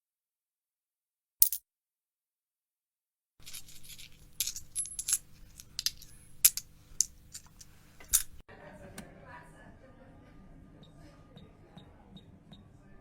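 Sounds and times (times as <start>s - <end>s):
coins dropping and clinking: 3.4s - 8.4s.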